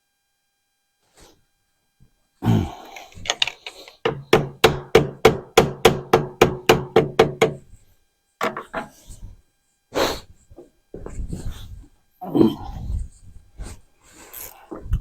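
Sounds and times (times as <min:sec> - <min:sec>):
hammer blows ringing: 0:04.0 - 0:07.6.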